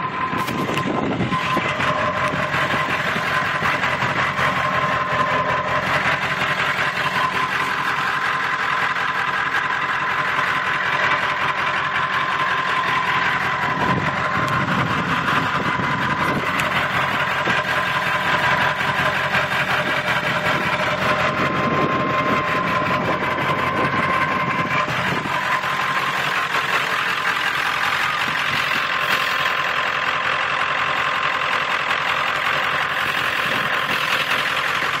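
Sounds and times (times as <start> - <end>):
high turbocharger whistle: 0.0 - 8.6
diesel engine idling: 0.0 - 35.0.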